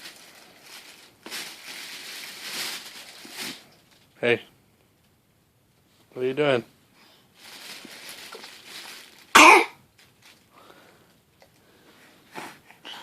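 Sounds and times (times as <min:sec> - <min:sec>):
soft breathy noise: 0:06.8 - 0:08.2, 0:10.5 - 0:13.0
loud cough: 0:09.4 - 0:09.8.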